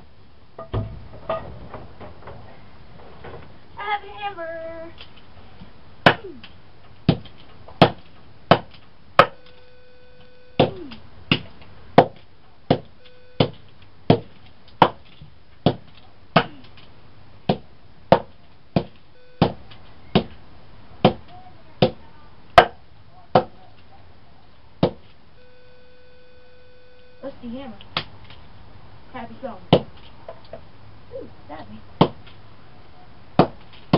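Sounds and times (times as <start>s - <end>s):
hammer striking a phone: 7.8s - 9.5s, 12.0s - 15.0s, 18.1s - 19.6s
steady pitched tone: 9.2s - 11.0s, 25.4s - 27.4s.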